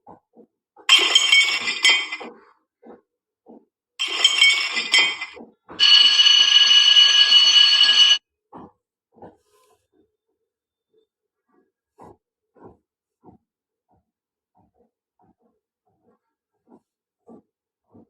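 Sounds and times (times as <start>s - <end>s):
electric bell ringing: 0.9s - 2.3s, 4.0s - 8.2s
metallic clattering: 0.9s - 2.3s, 4.0s - 8.2s.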